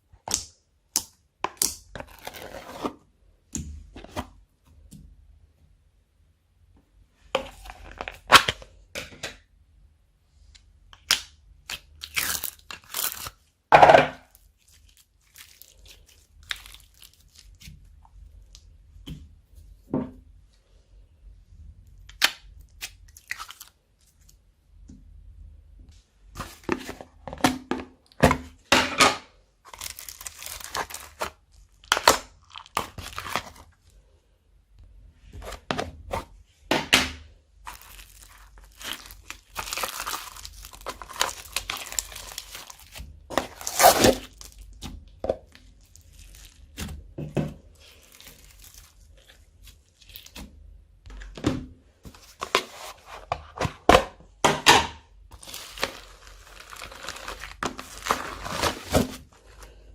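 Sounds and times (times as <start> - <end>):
slime squishing and crackling: 11.0 - 13.5, 14.3 - 18.7, 22.1 - 24.3, 29.7 - 33.7, 37.6 - 51.1, 55.3 - 59.7.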